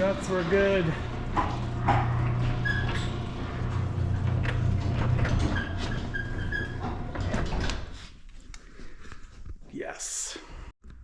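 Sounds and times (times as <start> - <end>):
garage door opener motor humming: 0.0 - 7.9
garage door rattling down: 0.0 - 8.0
door squeaks: 1.8 - 8.0.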